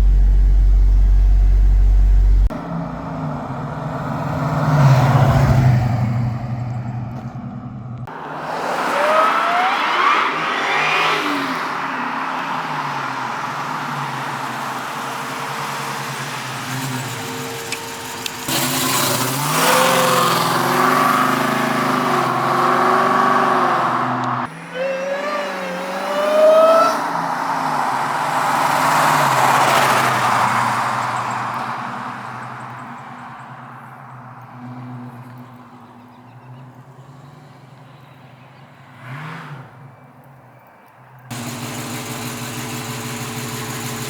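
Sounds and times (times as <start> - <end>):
car engine accelerating: 0.0 - 33.4.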